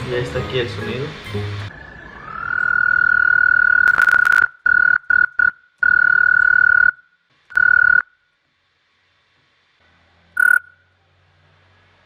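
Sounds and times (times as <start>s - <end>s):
frog call whistling note: 10.4s - 10.9s.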